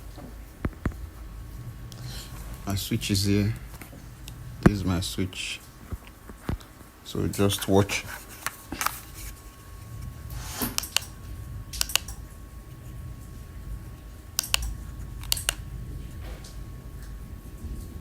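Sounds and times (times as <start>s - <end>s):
low steady hum: 0.0s - 18.0s
light switch clicks: 10.7s - 11.2s, 11.8s - 12.2s, 14.4s - 15.6s.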